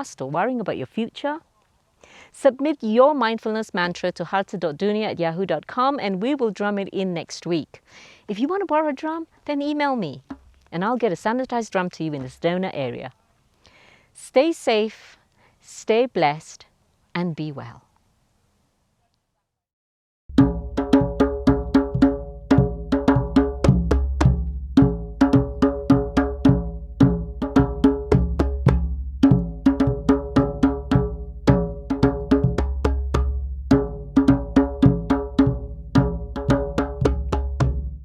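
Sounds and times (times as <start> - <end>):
drum rhythm: 10.2 - 10.5, 20.3 - 38.0.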